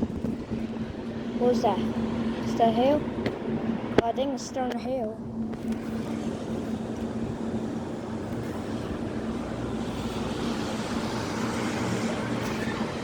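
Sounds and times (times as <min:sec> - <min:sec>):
low steady hum: 0:00.0 - 0:13.0
rain falling with wind: 0:05.5 - 0:13.0.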